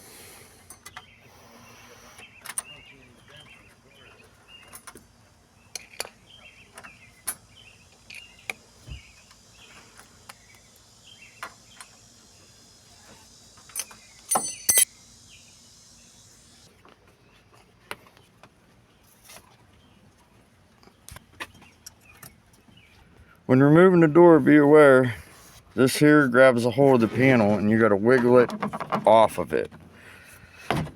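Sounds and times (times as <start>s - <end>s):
faint chirping: 5.5s - 17.5s
tools and trim parts clicking: 5.8s - 6.2s, 13.7s - 14.9s.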